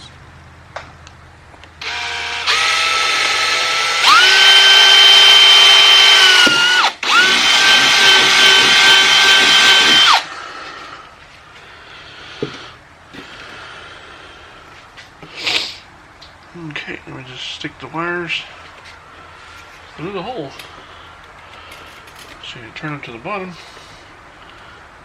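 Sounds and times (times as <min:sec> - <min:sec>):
electric drill whirring: 0:01.8 - 0:10.8.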